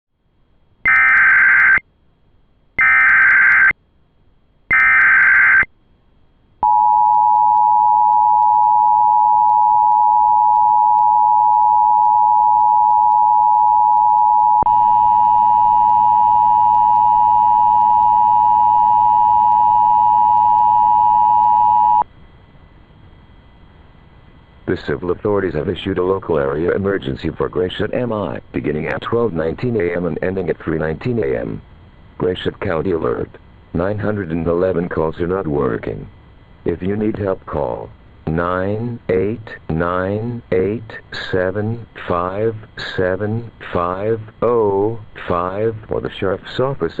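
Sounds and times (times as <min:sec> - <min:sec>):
low buzz: 0:05.7 - 0:29.4.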